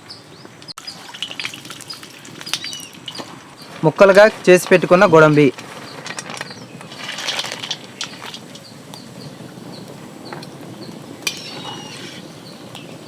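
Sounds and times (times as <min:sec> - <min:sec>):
small bird chirping: 0:00.0 - 0:03.8, 0:07.9 - 0:13.0.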